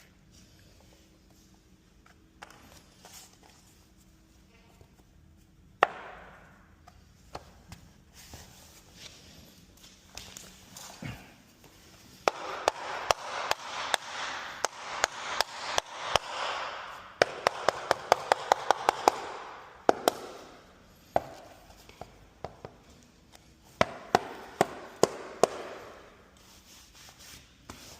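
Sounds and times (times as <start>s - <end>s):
sharp taps and knocks: 12.2s - 20.4s.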